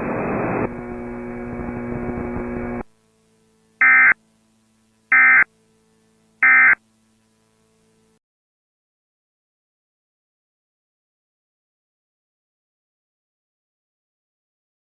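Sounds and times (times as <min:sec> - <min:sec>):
faint hum: 0:00.0 - 0:08.2
digital data bursts: 0:03.8 - 0:04.2, 0:05.1 - 0:05.5, 0:06.4 - 0:06.8.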